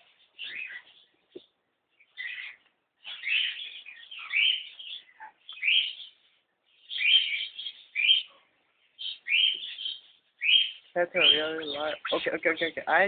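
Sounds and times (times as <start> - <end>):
cockatiel chirps and squawks: 2.2 - 6.1, 6.9 - 8.4, 9.0 - 11.4.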